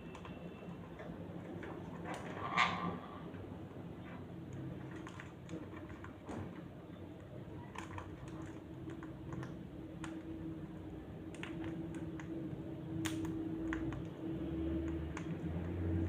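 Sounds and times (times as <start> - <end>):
light clicks and taps: 7.2 - 16.0.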